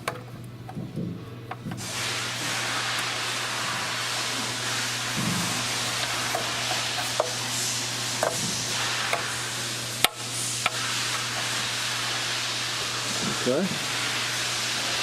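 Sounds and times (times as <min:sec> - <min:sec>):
machine handles clicking and knocking: 0:00.0 - 0:01.8, 0:08.2 - 0:09.2
grinder running with hiss and hum: 0:00.0 - 0:15.0.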